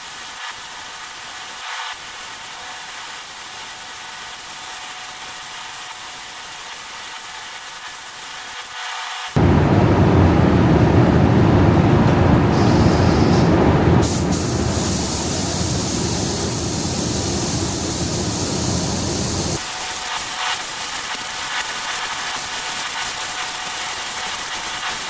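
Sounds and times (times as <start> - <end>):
paint spray gun hissing: 12.5 - 19.8.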